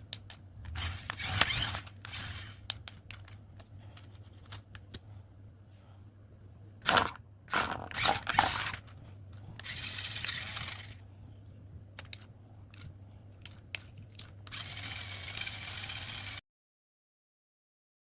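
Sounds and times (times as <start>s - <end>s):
small electric motor whirring: 0.7s - 2.8s, 9.6s - 11.0s, 14.4s - 16.4s.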